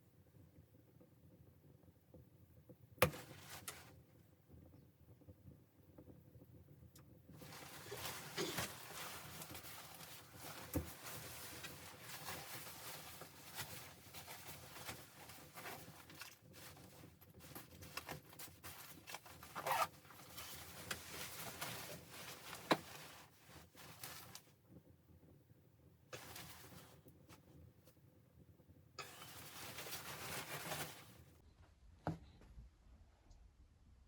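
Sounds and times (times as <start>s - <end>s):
close-up rustling and handling: 3.0s - 4.1s, 7.3s - 24.8s, 26.1s - 28.1s, 29.0s - 31.4s.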